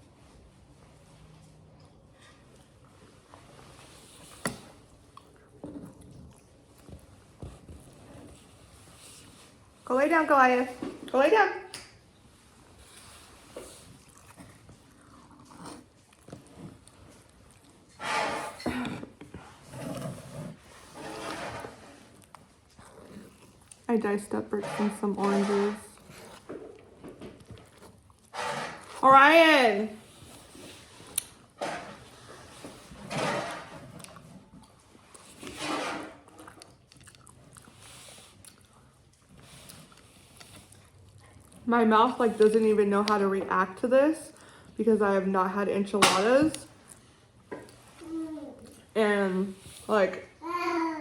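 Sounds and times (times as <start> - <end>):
chewing mouth sounds: 4.3 - 8.1, 12.8 - 18.0, 22.0 - 23.9, 36.3 - 41.7.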